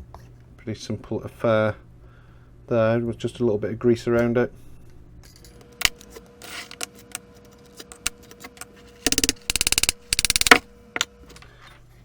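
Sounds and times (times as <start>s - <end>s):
rapid ratcheting clicks: 9.0s - 10.7s.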